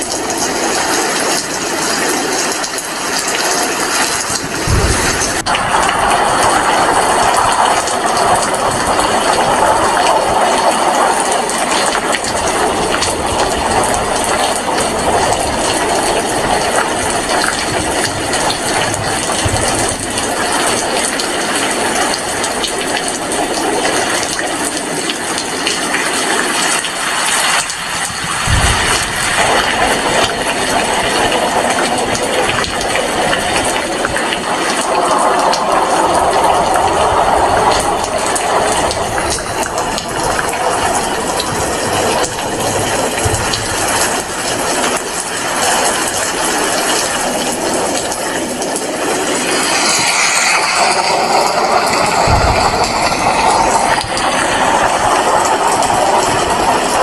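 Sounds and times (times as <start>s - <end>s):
heavy rain falling: 0.0s - 57.0s
low thump: 4.4s - 6.0s, 52.2s - 54.2s.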